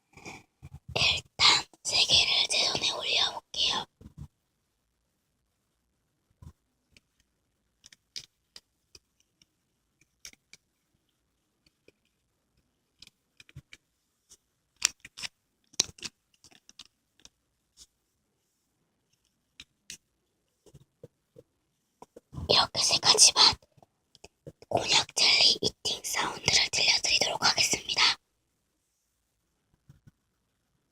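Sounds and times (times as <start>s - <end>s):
jelly pouches tapping and clicking: 14.8s - 17.4s.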